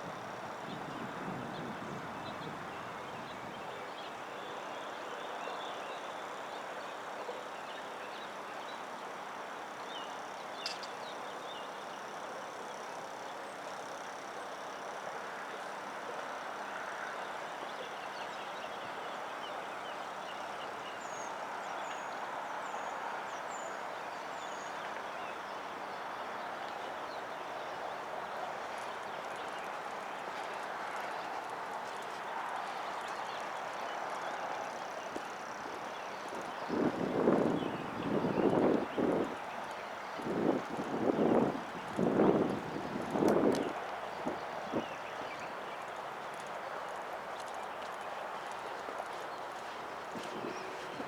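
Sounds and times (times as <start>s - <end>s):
small birds chirping: 47.4s - 51.0s.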